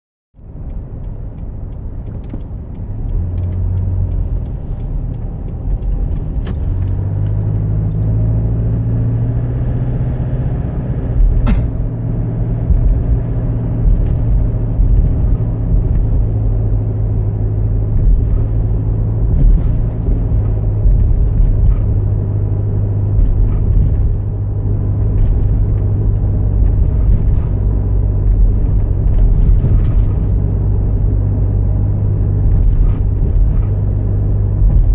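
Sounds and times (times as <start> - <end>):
car engine and road drone: 0.4 - 34.9
light rattling and clicks: 0.7 - 12.9.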